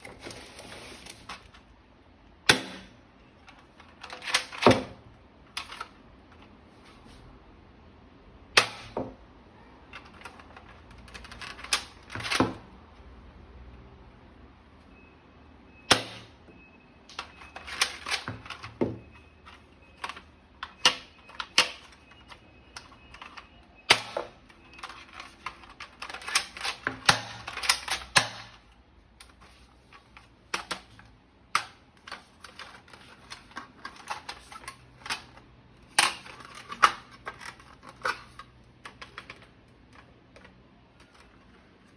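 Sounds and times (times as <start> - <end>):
toy gun parts clicking and snapping: 10.0 - 12.4, 22.8 - 28.6, 31.6 - 40.5.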